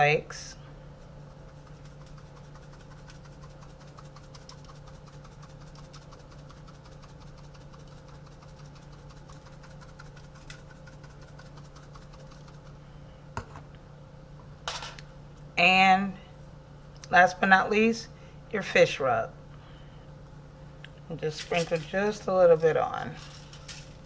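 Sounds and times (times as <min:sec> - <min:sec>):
steady low hum: 0:00.0 - 0:24.0
spice shaker rattling: 0:01.2 - 0:12.8, 0:21.3 - 0:22.3, 0:23.1 - 0:24.0.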